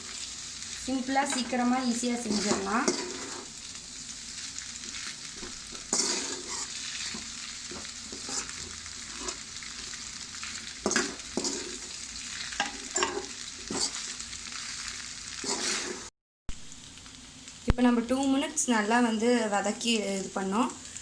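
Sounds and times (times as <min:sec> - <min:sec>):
pasta sizzling in a pan: 0:00.0 - 0:21.0
utensil scraping and knocking pan: 0:02.2 - 0:03.5, 0:05.4 - 0:09.4, 0:10.9 - 0:11.9, 0:12.6 - 0:14.0, 0:15.4 - 0:16.1.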